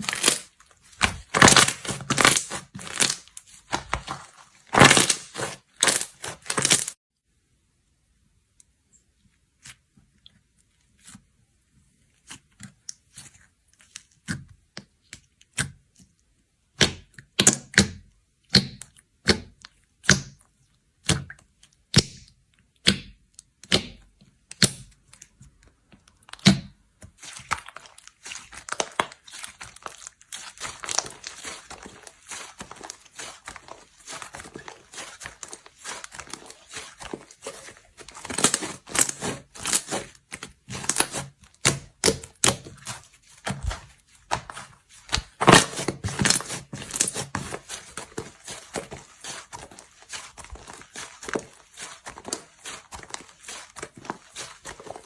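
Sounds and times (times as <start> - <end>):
slime crackling and popping: 0.0 - 7.0, 26.1 - 55.0.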